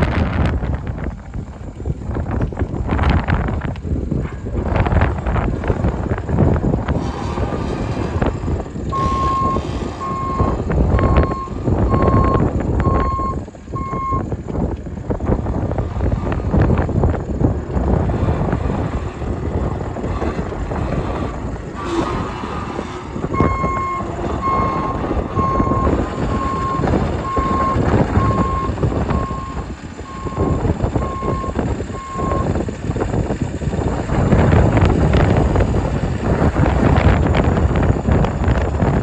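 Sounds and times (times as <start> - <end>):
diesel engine running: 0.0 - 39.0
backup alarm beeping: 8.8 - 14.3, 23.4 - 32.5.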